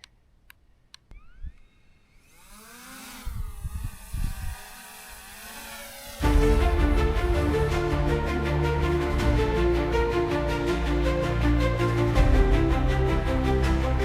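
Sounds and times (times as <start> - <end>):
clicks: 0.0 - 1.7
drone motors whining: 1.1 - 7.9
high buzz of spinning propellers: 1.1 - 11.6
wind rumble on microphone: 3.2 - 4.8.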